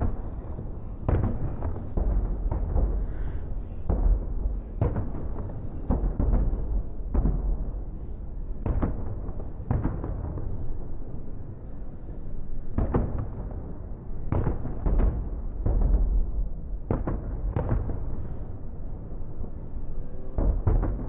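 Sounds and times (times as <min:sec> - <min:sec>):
continuous low rumble: 0:00.0 - 0:21.0.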